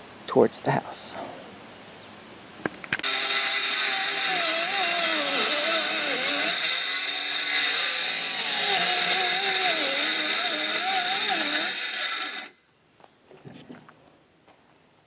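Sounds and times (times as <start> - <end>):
electric power tool running: 3.0 - 12.6.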